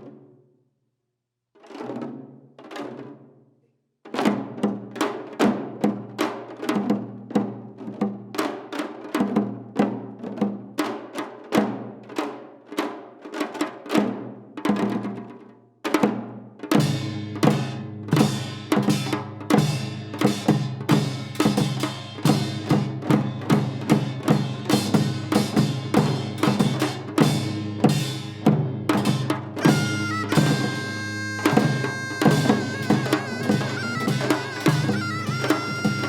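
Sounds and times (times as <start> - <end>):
hourglass drums fast rhythm: 16.8 - 36.0
wind instrument wavering note: 29.6 - 36.0.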